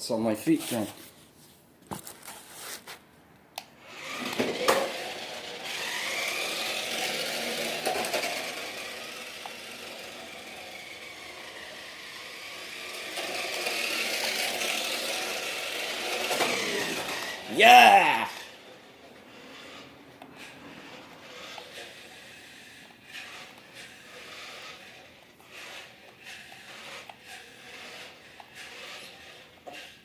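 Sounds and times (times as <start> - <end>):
toy car electric motor whining: 3.7 - 30.0.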